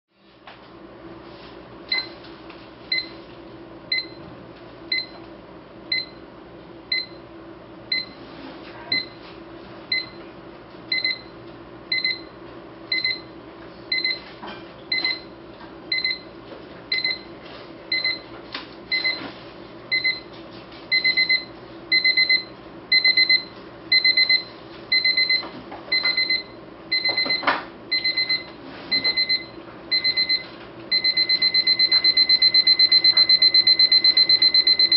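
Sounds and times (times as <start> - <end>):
alarm clock beeping: 20.9 - 34.9.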